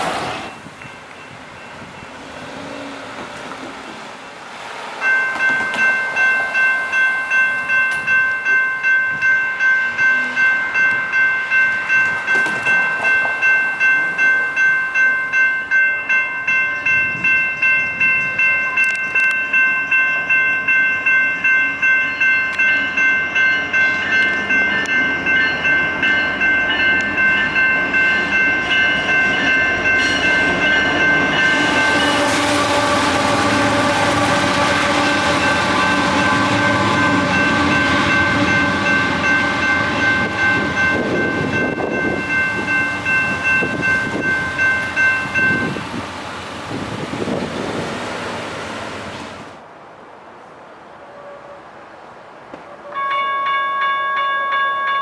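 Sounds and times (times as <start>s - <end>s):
grade crossing warning bell: 0.2s - 49.6s, 52.8s - 55.0s
train horn: 9.9s - 10.7s, 30.0s - 42.6s.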